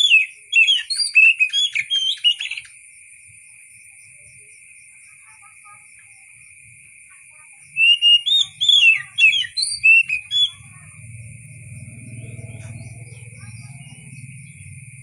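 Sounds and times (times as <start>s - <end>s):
bird singing whistled phrases: 0.0s - 2.7s, 7.7s - 10.8s
low hum: 10.6s - 15.0s.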